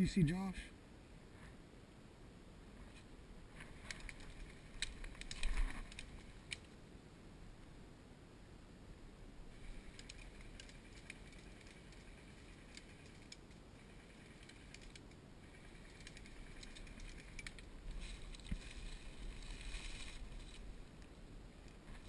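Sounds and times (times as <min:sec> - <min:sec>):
faint rustling and crackling: 0:01.2 - 0:01.6, 0:02.6 - 0:06.8, 0:09.4 - 0:22.0.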